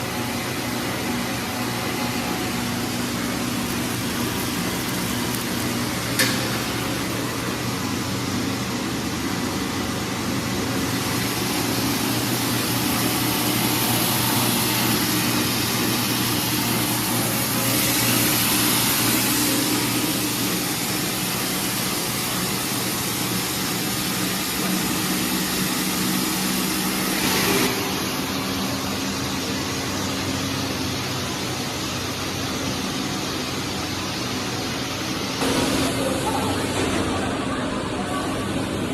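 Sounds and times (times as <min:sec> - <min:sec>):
production line machinery hum: 0:00.0 - 0:38.9
machinery hiss: 0:10.1 - 0:37.6.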